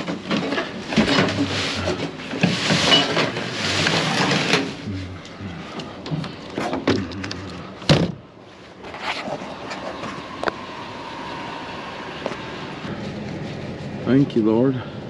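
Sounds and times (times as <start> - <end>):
knocks and clunks: 0.0 - 8.3
vehicle running: 0.0 - 15.0.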